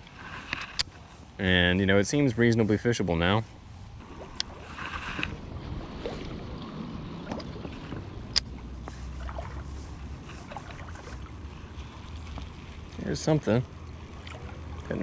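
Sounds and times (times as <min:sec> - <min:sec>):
creek water running and splashing: 0:04.0 - 0:15.0.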